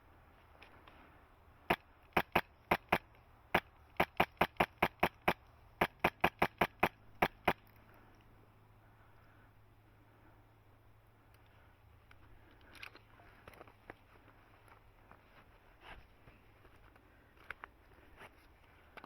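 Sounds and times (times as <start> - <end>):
airsoft rifle shots: 1.7 - 7.7.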